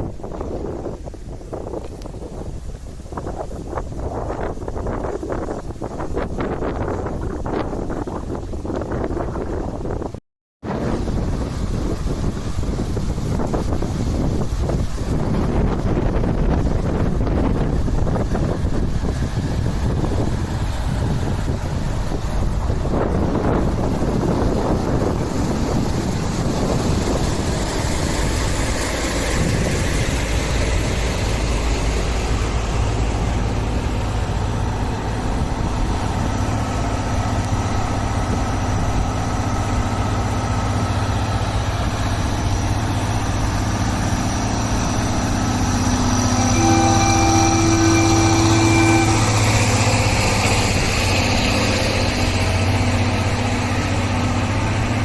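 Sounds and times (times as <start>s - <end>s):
engine idling: 10.8s - 55.0s
held multi-pitch tone: 43.8s - 55.0s.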